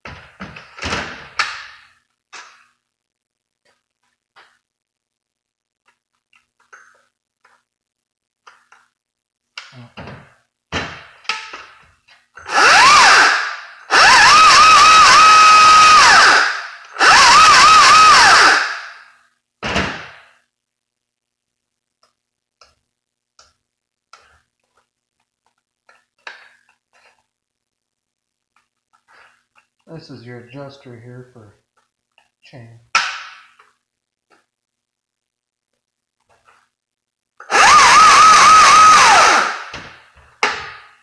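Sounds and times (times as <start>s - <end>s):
power tool motor whining: 12.5s - 18.9s, 37.4s - 39.7s.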